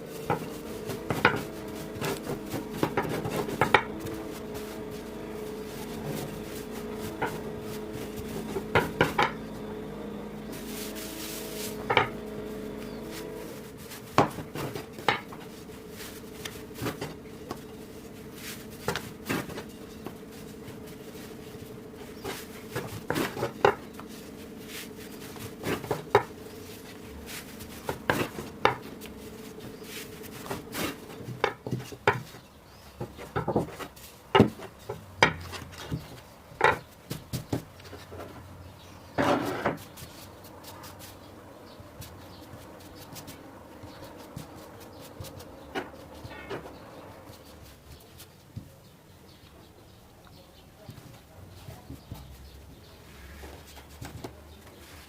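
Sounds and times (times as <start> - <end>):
steady hum: 0.0 - 32.1.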